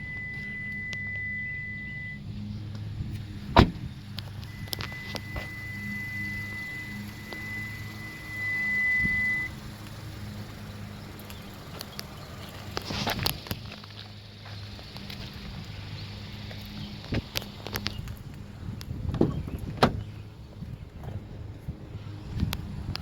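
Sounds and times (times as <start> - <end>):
car engine low hum: 0.0 - 23.0
thin high whine: 4.4 - 9.6.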